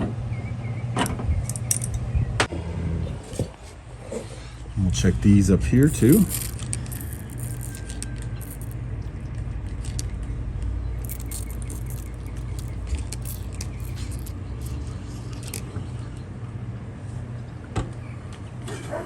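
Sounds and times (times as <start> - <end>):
tools handling metal fittings: 5.8 - 8.8, 11.0 - 15.6.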